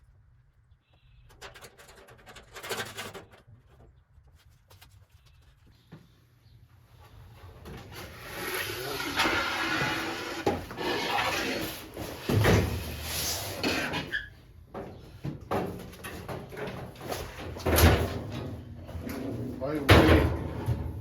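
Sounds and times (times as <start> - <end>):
parts knocking and clattering: 1.2 - 4.1, 14.7 - 21.0.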